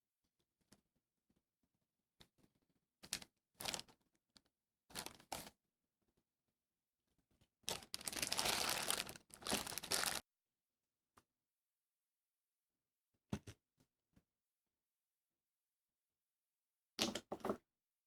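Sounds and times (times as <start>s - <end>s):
packaging crinkling: 5.0s - 5.3s, 7.7s - 10.2s.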